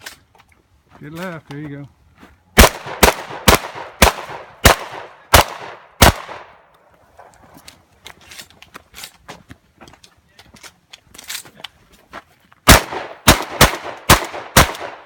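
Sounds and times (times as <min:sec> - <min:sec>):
shotgun shots echoing: 0:02.6 - 0:06.6, 0:12.7 - 0:15.0.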